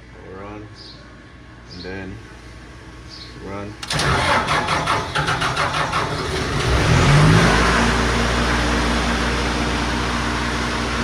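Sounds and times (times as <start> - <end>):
engine cranking and starting: 3.8 - 8.1.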